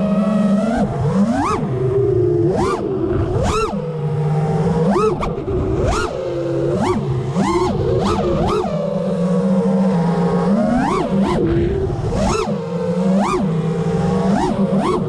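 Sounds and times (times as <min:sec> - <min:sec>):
drone propellers whining: 0:00.0 - 0:15.0.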